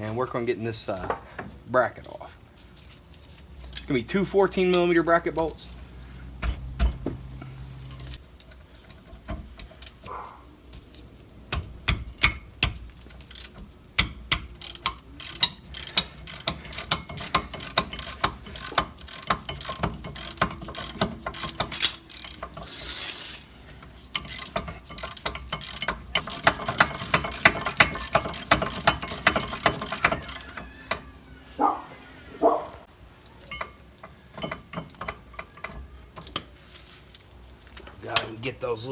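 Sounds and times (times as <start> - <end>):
hand ratchet clicking: 11.5 - 31.1.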